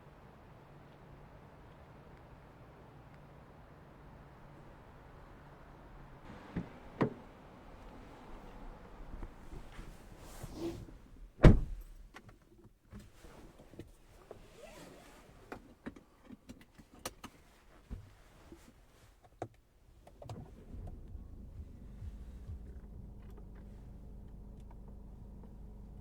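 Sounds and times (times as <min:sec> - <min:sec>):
loud thump inside car: 0:11.4 - 0:12.0, 0:20.8 - 0:23.0.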